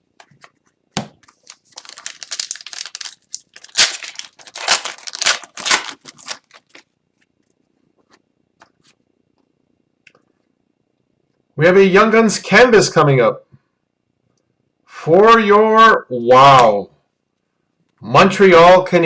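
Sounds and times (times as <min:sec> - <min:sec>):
foil wrapper tearing and crinkling: 0:01.2 - 0:06.8.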